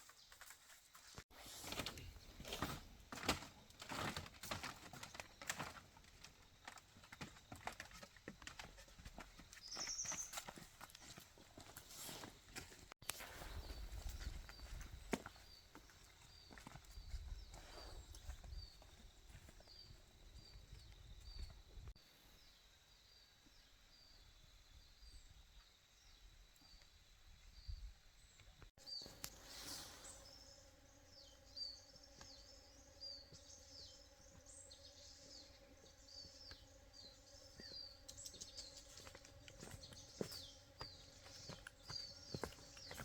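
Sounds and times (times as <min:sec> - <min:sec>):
bird chirping: 0:09.5 - 0:10.6, 0:22.4 - 0:43.0.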